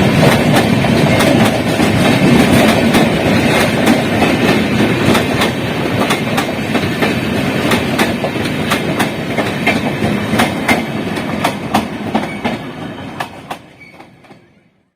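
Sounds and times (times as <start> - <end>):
train wheels clacking over rail joints: 0.0 - 14.5.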